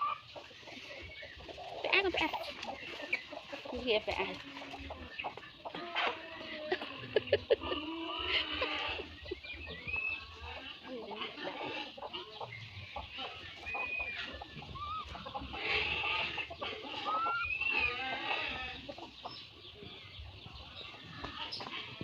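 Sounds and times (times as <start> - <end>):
animal clucking and clicking: 0.0 - 22.0
animal squeaks: 13.1 - 18.8.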